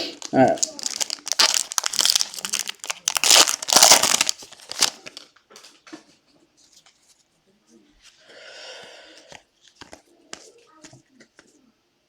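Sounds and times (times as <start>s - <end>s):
foil wrapper crinkling and tearing: 0.0s - 5.4s.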